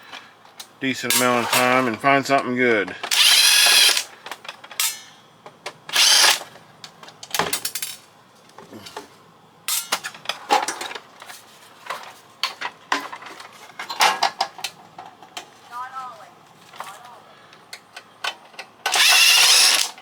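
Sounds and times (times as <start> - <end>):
power drill spinning: 3.1 - 4.1, 5.9 - 6.4, 18.9 - 20.0.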